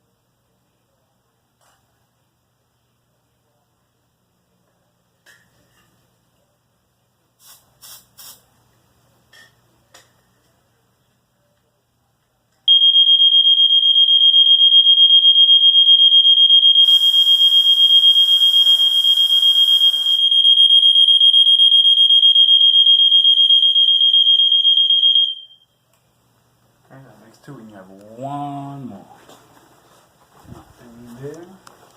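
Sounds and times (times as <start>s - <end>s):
hiss: 7.4s - 8.5s, 16.8s - 20.2s
high-pitched alarm tone: 12.7s - 25.7s.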